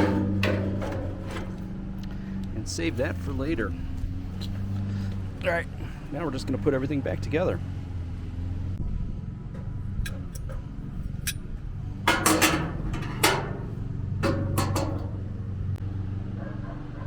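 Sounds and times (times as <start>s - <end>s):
metal grill parts clanking: 0.0s - 4.0s, 9.6s - 15.7s
low background rumble: 0.0s - 6.2s.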